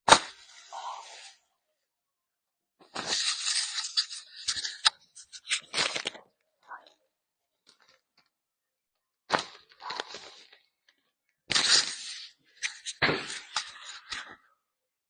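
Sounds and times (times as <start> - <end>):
rustling noise: 2.8 - 6.2.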